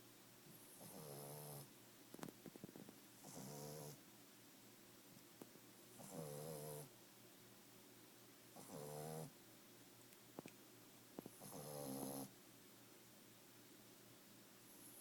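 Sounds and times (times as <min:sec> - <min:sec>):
puppy snoring: 0:00.6 - 0:01.7, 0:03.2 - 0:04.0, 0:05.9 - 0:06.9, 0:08.6 - 0:09.4, 0:11.2 - 0:12.3.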